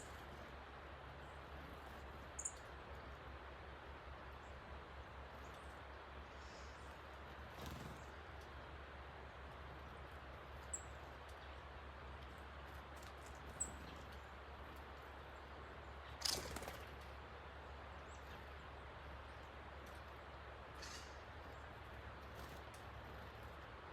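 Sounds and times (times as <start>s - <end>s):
high bird chirps: 2.3s - 2.7s, 20.8s - 21.4s.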